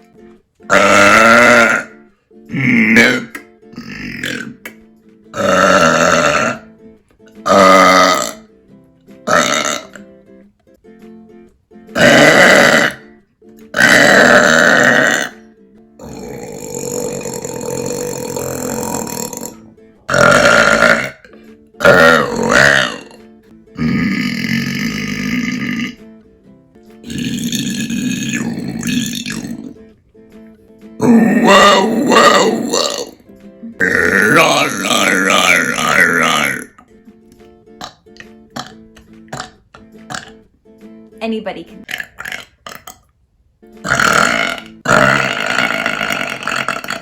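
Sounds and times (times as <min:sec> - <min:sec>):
background music: 0:00.0 - 0:47.0
woman burping loudly: 0:00.7 - 0:04.6, 0:05.3 - 0:06.8, 0:07.4 - 0:08.5, 0:09.2 - 0:10.1, 0:11.9 - 0:26.0, 0:27.0 - 0:29.8, 0:31.0 - 0:36.8, 0:37.8 - 0:40.5, 0:41.8 - 0:43.1, 0:43.8 - 0:47.0.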